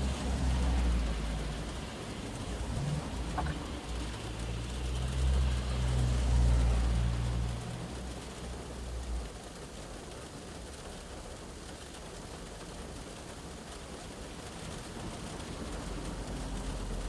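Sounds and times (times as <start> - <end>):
passing vehicle rumble: 0.0 - 9.3
rain on car roof: 0.0 - 17.0.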